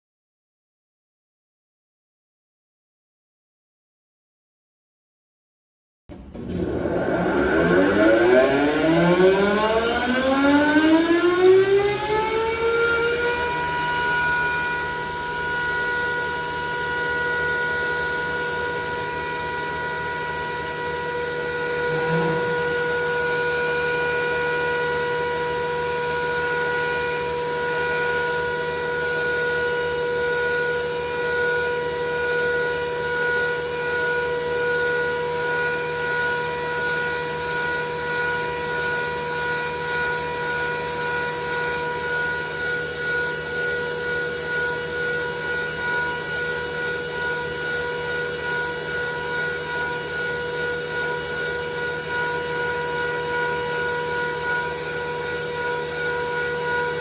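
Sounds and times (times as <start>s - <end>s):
thickness planer whining: 6.1s - 29.4s.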